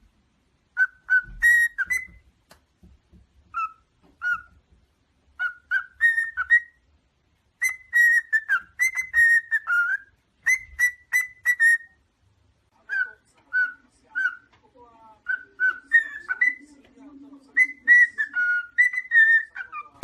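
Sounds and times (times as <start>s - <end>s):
parrot whistling: 0.8s - 2.2s, 3.5s - 4.6s, 5.4s - 6.8s, 7.6s - 12.0s, 12.9s - 14.5s, 15.2s - 16.6s, 17.6s - 20.0s.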